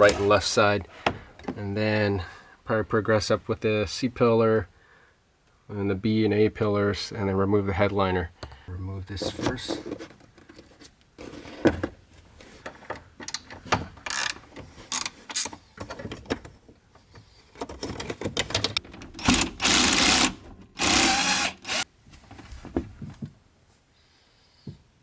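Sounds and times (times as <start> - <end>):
tools and trim clicking: 13.2 - 15.6, 18.6 - 21.9
small power tool bursts: 19.2 - 21.8.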